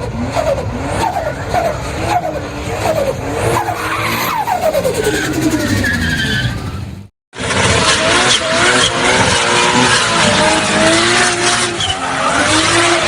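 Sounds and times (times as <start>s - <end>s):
car engine revving: 0.0s - 13.0s.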